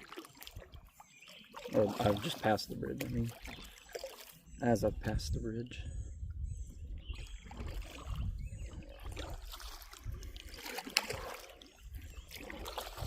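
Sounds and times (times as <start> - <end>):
water dripping: 0.0 - 4.4
paddle strokes splashing: 0.0 - 4.6, 7.1 - 13.0.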